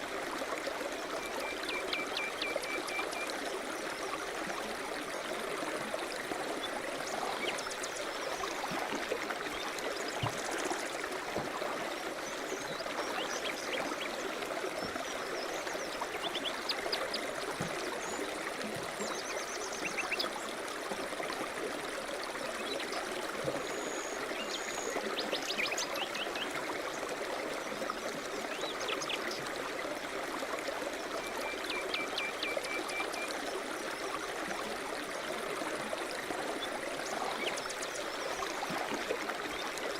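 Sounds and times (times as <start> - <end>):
water rushing over rocks: 7.0 - 15.0.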